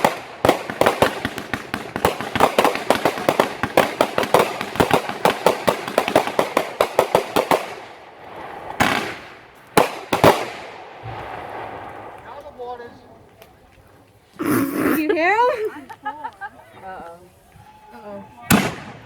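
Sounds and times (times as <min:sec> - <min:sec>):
fireworks bangs: 0:00.0 - 0:13.5, 0:18.3 - 0:19.0.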